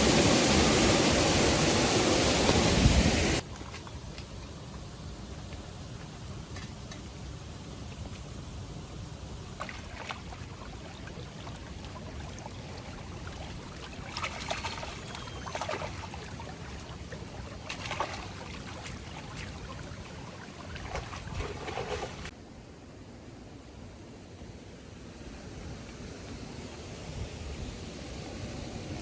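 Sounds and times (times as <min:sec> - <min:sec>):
flowing water rushing: 0:00.0 - 0:03.9, 0:08.5 - 0:22.3.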